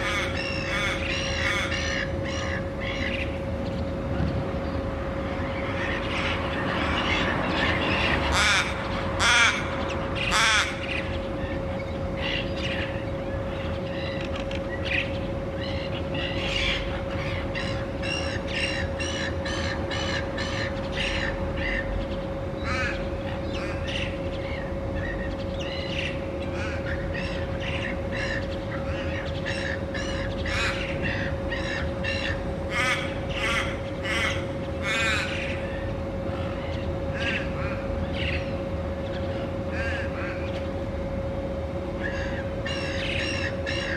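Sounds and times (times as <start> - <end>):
ravens cawing: 0.0 - 3.2, 5.4 - 11.1, 15.6 - 21.9, 22.6 - 24.6, 26.5 - 35.8, 39.6 - 40.5, 42.0 - 43.9
steady hum: 0.0 - 43.9.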